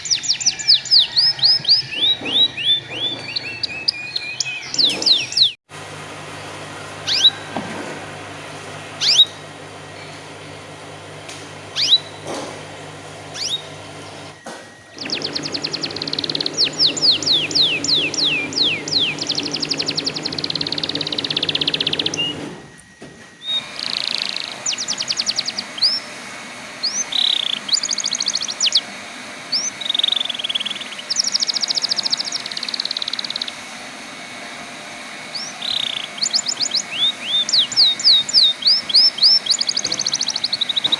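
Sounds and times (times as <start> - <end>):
canary singing trills: 0.0 - 5.6, 7.0 - 7.6, 9.0 - 10.6, 11.6 - 12.5, 13.2 - 22.5, 23.4 - 26.1, 26.8 - 28.8, 29.5 - 33.6, 35.2 - 40.9.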